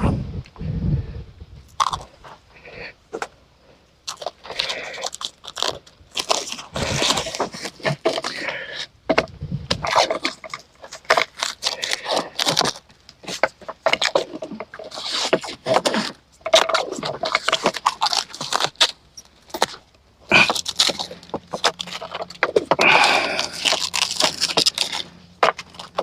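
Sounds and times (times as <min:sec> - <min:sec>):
wooden boards knocking and scraping: 0:05.6 - 0:26.0.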